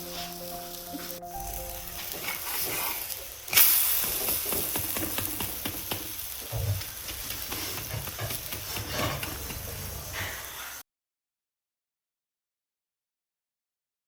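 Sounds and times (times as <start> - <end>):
food sizzling in oil: 0.0 - 10.8.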